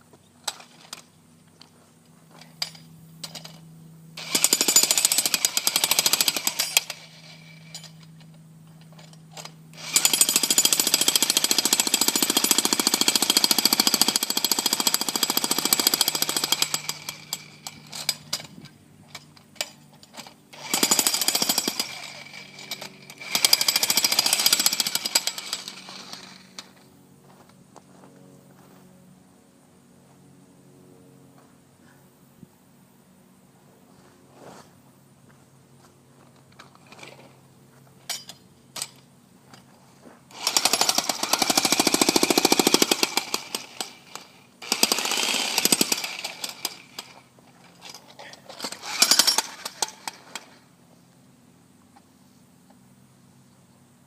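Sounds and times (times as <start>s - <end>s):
jackhammer chiselling concrete: 4.2s - 7.9s, 9.8s - 18.5s, 20.6s - 26.6s, 40.3s - 47.2s, 47.8s - 50.5s.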